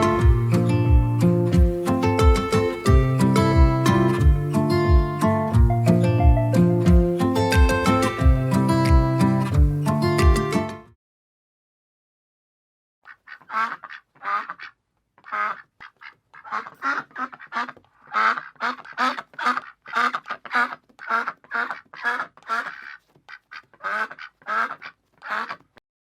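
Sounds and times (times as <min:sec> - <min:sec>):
duck quacking: 0:13.1 - 0:25.8.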